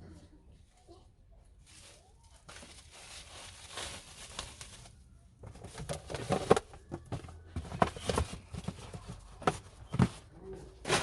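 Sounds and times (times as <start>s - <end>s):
packaging rustling: 1.7s - 10.1s.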